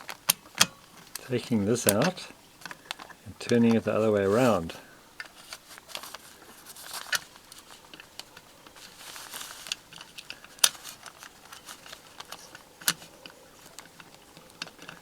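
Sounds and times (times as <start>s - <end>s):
sharp metal clicks: 0.0s - 3.9s
metal lock parts scraping: 0.0s - 4.6s, 5.2s - 15.0s.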